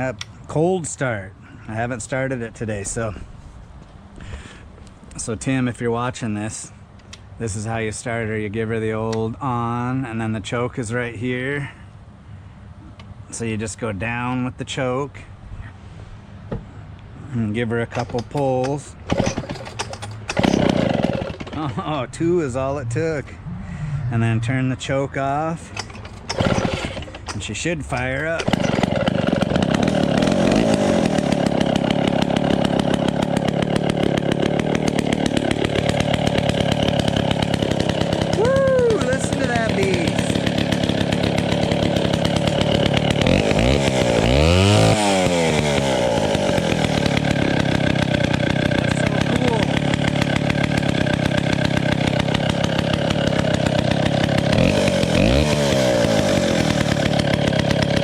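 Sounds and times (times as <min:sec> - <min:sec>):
two-stroke chainsaw running: 0:17.9 - 0:22.0, 0:25.6 - 0:58.0.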